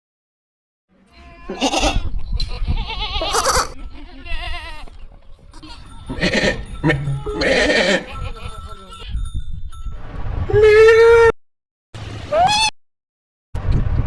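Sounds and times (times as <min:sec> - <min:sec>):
goats bleating: 0:01.1 - 0:02.0, 0:02.6 - 0:04.9, 0:05.7 - 0:08.5.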